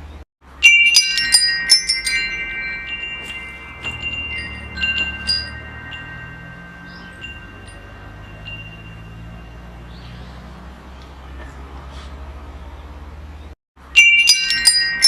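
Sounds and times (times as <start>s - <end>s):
wind chimes ringing: 0.5s - 10.7s, 13.8s - 15.0s.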